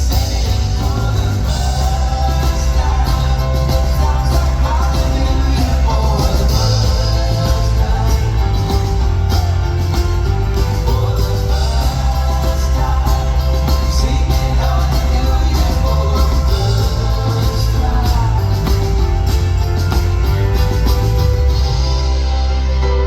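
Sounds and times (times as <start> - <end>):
person singing: 0.0 - 22.0
live rock band playing: 0.0 - 23.0.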